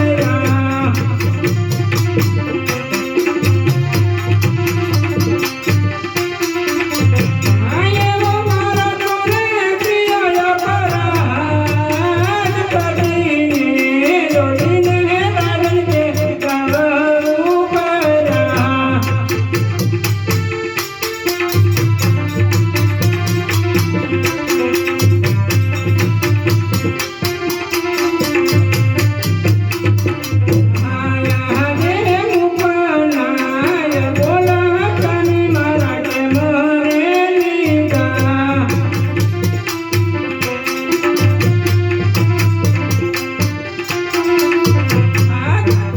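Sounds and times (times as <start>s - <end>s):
person singing: 0.0s - 4.1s, 7.2s - 19.9s, 30.5s - 42.0s, 43.9s - 45.9s
folk song over a sound system: 0.0s - 45.9s
keyboard: 0.0s - 45.9s
steady drum beat: 0.0s - 45.9s.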